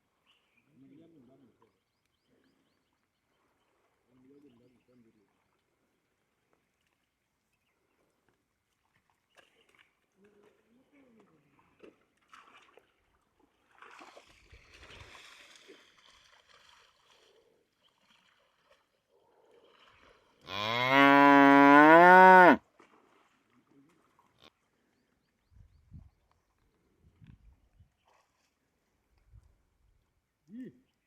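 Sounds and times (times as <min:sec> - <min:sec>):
buffalo mooing: 0:20.5 - 0:22.6.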